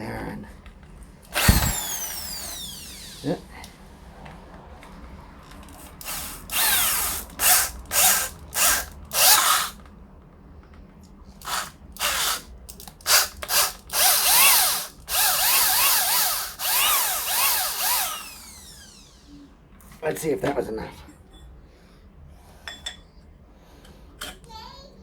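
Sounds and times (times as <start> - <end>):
drill sanding wheel whining: 1.3 - 3.4, 6.0 - 9.8, 11.4 - 12.5, 13.1 - 19.4.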